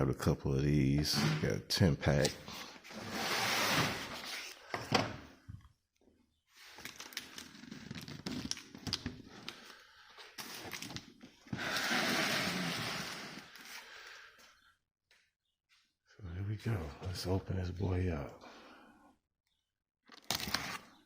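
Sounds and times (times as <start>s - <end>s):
sliding noise: 2.9s - 4.4s
packaging rustling: 6.6s - 11.8s.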